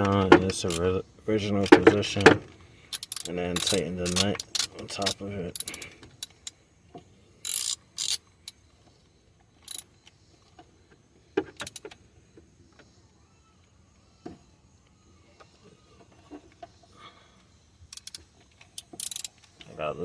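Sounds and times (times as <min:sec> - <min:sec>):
hand ratchet clicking: 0:00.0 - 0:00.8, 0:02.9 - 0:06.5, 0:07.4 - 0:08.6, 0:09.6 - 0:09.8, 0:17.9 - 0:19.7
metallic clinks of tools: 0:02.9 - 0:06.5.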